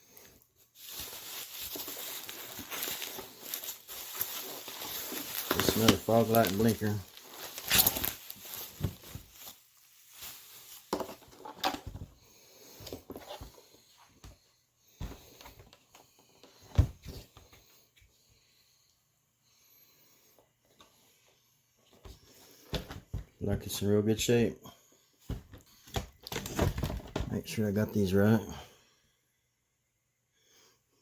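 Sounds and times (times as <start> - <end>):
packaging rustling: 0.7 - 12.0.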